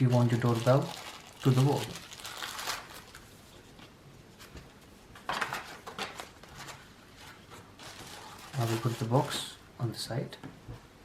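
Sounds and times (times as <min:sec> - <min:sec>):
packaging rustling: 0:00.0 - 0:03.3, 0:05.3 - 0:09.5.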